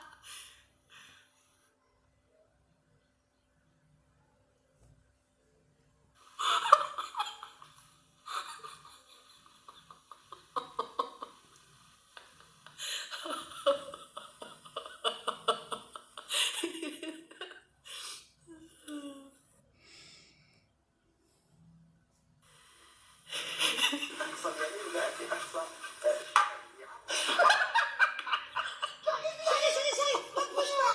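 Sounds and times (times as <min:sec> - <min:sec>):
woman laughing: 0:23.4 - 0:30.9.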